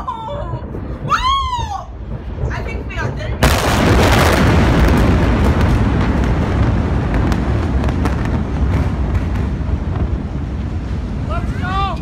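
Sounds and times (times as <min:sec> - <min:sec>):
deep explosion rumble: 0:00.0 - 0:12.0.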